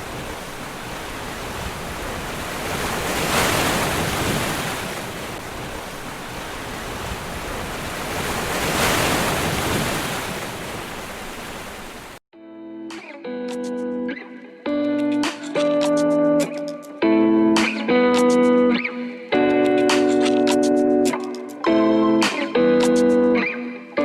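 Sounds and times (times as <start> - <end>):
waves breaking: 0.0 - 12.2
wind: 0.0 - 12.2.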